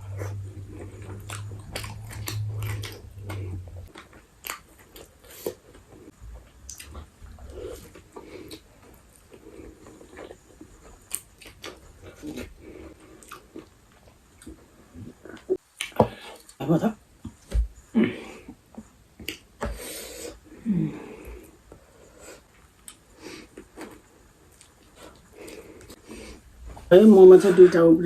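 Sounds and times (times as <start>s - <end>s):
low hum: 0.0s - 3.9s
chewing and biting food: 0.1s - 6.0s.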